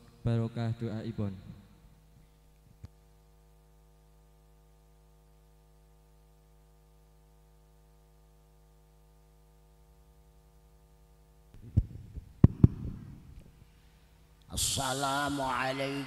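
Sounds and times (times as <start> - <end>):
faint electrical mains hum: 0.0 - 16.0
sharp loud thumps with rumble: 11.6 - 13.3.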